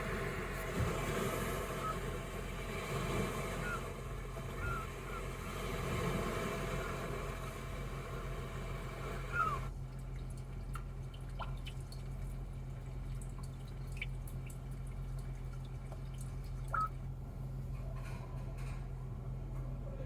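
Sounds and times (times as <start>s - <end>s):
steady low hum: 0.0s - 20.0s
water dripping: 9.3s - 17.1s.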